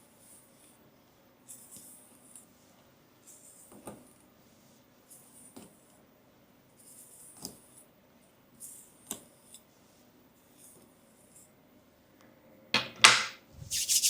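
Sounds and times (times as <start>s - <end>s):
hands rubbing over hair: 13.6s - 14.0s.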